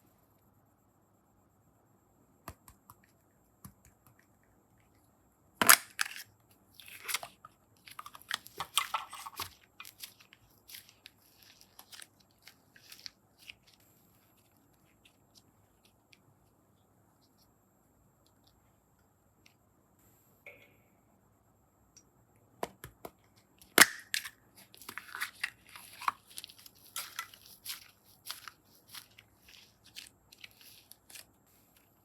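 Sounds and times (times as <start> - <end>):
slime crackling: 24.8 - 31.2.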